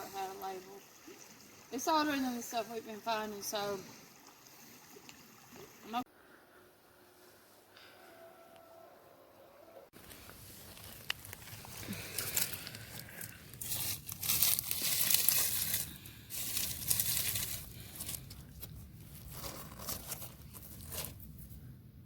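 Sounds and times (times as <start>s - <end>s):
hands digging through leaf litter: 10.0s - 21.6s.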